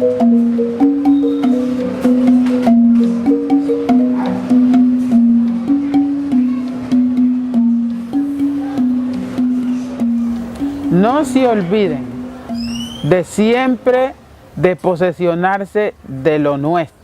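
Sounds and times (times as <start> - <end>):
sharp percussion clicks: 0.0 - 13.4
marimba playing: 0.0 - 13.9.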